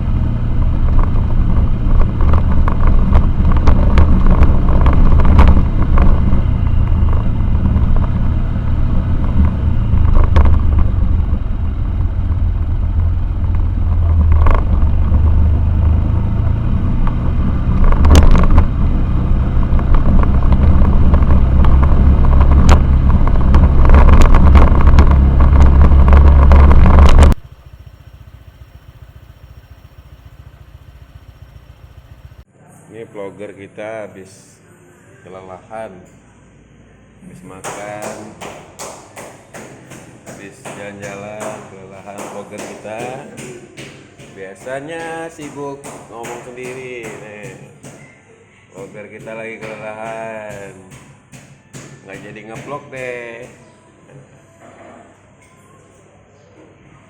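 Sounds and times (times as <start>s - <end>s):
motorcycle engine running: 0.0s - 32.5s
wind noise on microphone: 0.6s - 27.4s
faint high whine: 26.1s - 32.5s.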